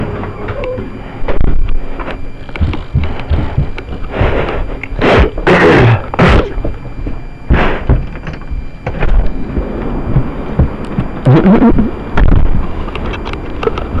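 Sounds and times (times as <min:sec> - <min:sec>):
dull thumps: 0:02.2 - 0:12.6
wind gusting over microphone: 0:09.1 - 0:14.0.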